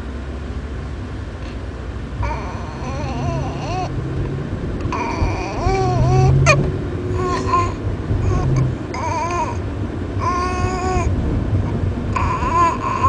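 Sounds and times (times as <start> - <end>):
baby whimpering cries: 2.2 - 3.9, 4.9 - 9.6, 10.2 - 11.2, 12.1 - 13.0.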